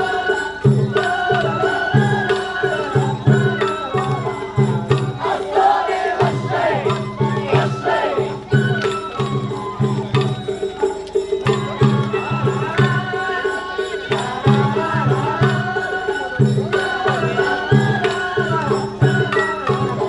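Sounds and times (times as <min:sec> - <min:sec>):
taiko drums beating: 0:00.0 - 0:20.0.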